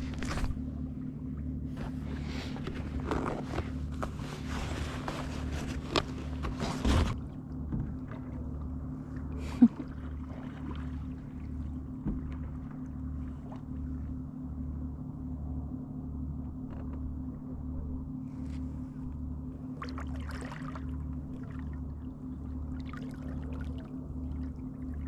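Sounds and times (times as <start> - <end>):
low rumble with slow pulse: 0.0 - 25.0
water splashes: 1.8 - 14.1, 19.8 - 25.0.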